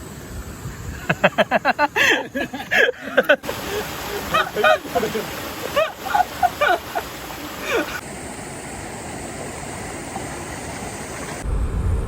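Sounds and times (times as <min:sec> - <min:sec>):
stream water rushing: 0:01.0 - 0:11.4
loud low rumble: 0:11.4 - 0:12.0.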